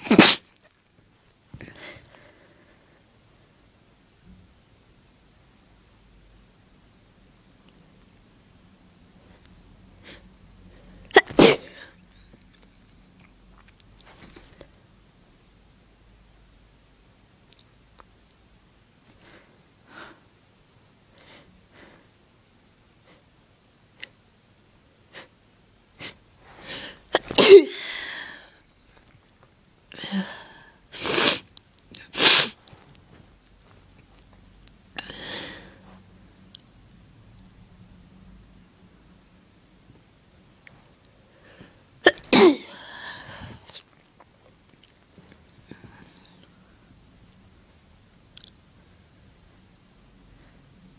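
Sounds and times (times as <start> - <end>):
person sneezing: 0.0 - 0.6, 11.1 - 11.9, 26.0 - 28.4, 30.9 - 32.6, 42.0 - 43.7.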